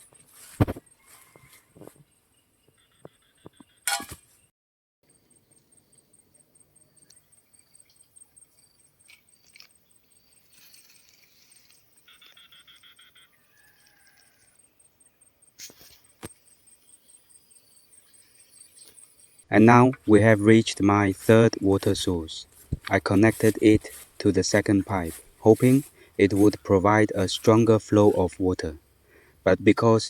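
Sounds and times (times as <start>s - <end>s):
insects trilling: 5.1s - 19.5s, 20.4s - 30.0s.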